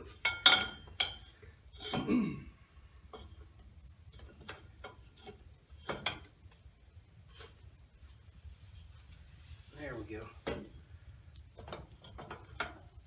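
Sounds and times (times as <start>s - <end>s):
metallic ticks: 0.0s - 2.0s, 2.6s - 13.0s
wrench clanking: 0.1s - 2.0s
person straining vocal sound: 1.9s - 2.6s.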